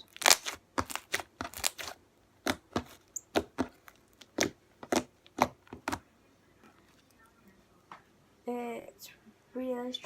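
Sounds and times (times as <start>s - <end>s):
slime being squeezed by hand: 0.1s - 3.6s.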